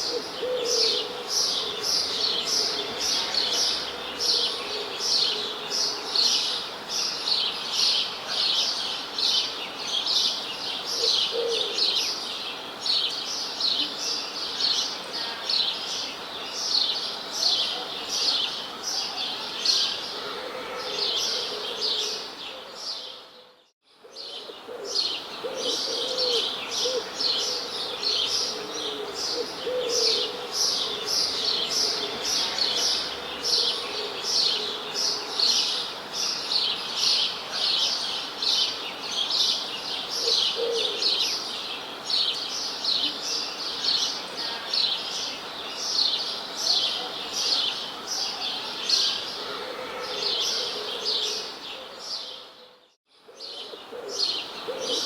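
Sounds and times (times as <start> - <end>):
low bird calls: 0.0 - 6.6, 20.1 - 35.9, 48.3 - 55.0.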